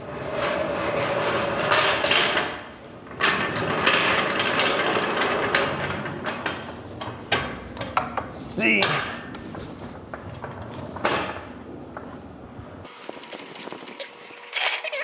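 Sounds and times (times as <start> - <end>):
floor jack metal rattling and scraping: 0.0 - 14.0.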